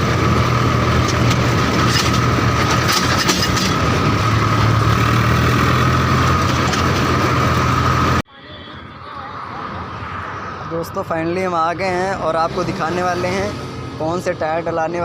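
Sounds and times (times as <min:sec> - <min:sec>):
tractor diesel engine running: 0:00.0 - 0:08.9.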